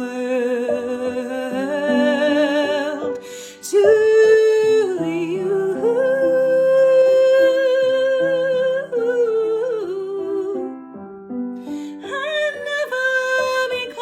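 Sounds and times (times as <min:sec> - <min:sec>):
woman singing with vibrato: 0:00.0 - 0:10.8, 0:12.0 - 0:14.0
singer breathing: 0:03.2 - 0:03.6, 0:11.5 - 0:12.1.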